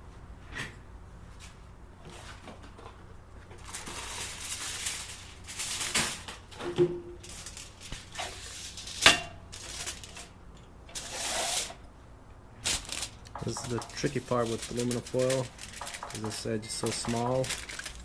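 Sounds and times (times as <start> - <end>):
aluminum foil crinkling: 3.5 - 6.6, 7.2 - 10.4, 12.6 - 18.0.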